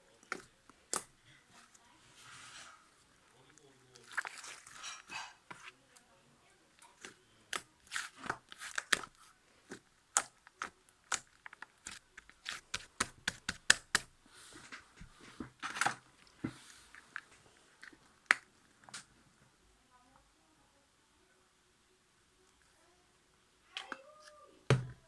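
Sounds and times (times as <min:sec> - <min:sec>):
wet squelches: 0:03.4 - 0:05.8
sticky clicks and pops: 0:10.1 - 0:14.1.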